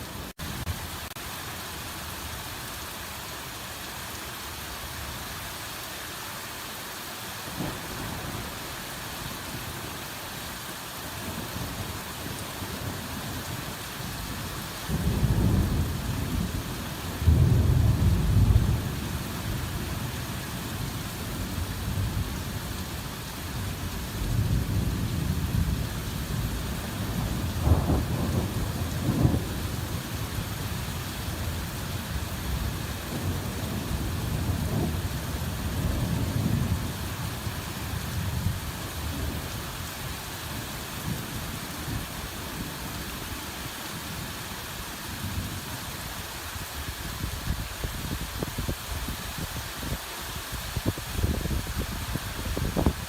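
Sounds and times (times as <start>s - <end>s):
heavy rain pouring: 0.0s - 53.0s
thunder rumbling: 14.9s - 19.9s, 24.3s - 30.8s.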